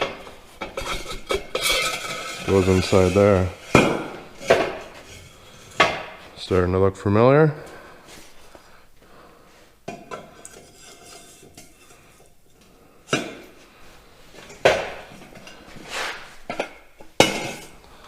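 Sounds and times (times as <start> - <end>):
metal tubes clanking together: 0.0 - 6.2.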